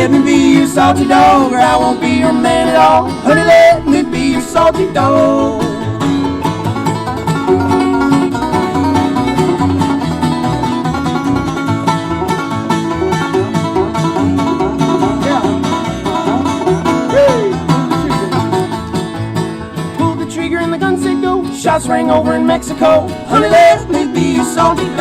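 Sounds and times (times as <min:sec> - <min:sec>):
acoustic guitar rhythm: 0:00.0 - 0:25.0
fast banjo picking: 0:00.0 - 0:25.0
upright bass: 0:00.0 - 0:25.0.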